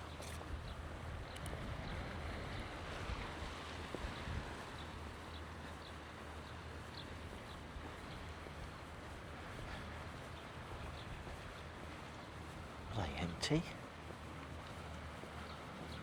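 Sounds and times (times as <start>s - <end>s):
wind buffeting microphone: 0.4s - 4.6s.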